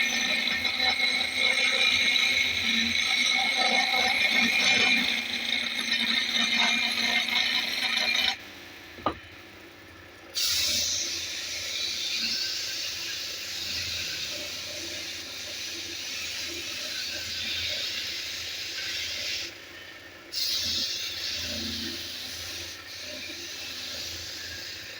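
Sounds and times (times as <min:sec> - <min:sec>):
wood lathe tool scraping: 0:00.0 - 0:08.4.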